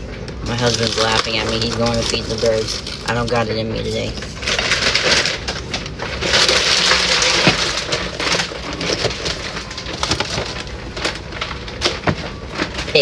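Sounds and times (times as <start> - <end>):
food packaging crinkling: 0.4 - 13.0.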